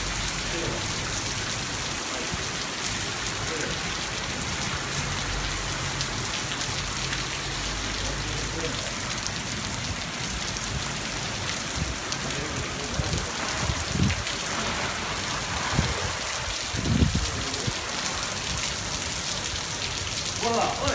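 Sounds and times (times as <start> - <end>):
heavy rain pouring: 0.0 - 20.9
low rumbles: 11.7 - 19.0.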